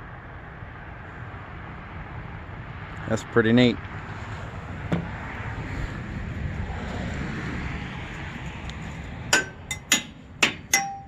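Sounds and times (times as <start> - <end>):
metal clang ringing: 9.4 - 11.0.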